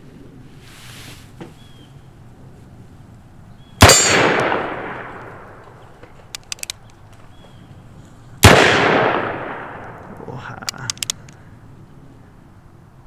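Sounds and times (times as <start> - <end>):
revolver gunshots with echo: 3.8 - 6.9, 8.4 - 11.3
revolver hammer cocking clicks: 3.8 - 7.0, 8.4 - 11.4.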